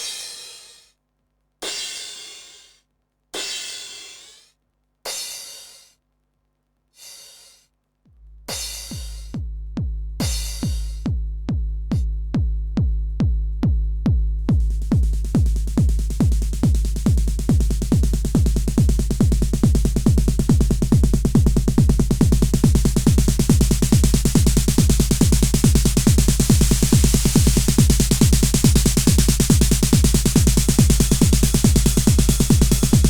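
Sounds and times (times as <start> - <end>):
hi-hat hiss: 1.6 - 2.8, 3.4 - 6.0, 7.0 - 7.7, 8.5 - 9.4, 10.2 - 11.1, 14.7 - 33.0
drum machine kick pattern: 8.1 - 33.0.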